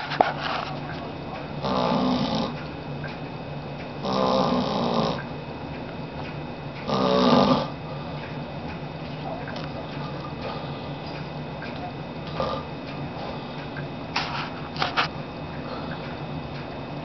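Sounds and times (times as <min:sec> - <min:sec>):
man snoring: 0:01.6 - 0:02.6, 0:04.0 - 0:05.2, 0:06.9 - 0:07.8, 0:12.3 - 0:12.7.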